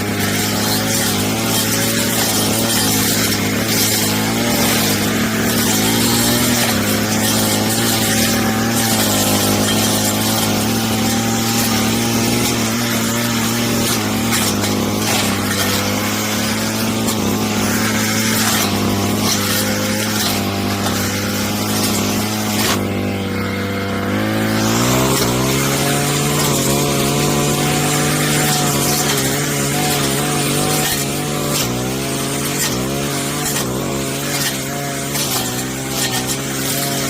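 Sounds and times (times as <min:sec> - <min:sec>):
blade cracking through wood: 0:00.0 - 0:37.0
brush cutter engine running: 0:00.0 - 0:37.0.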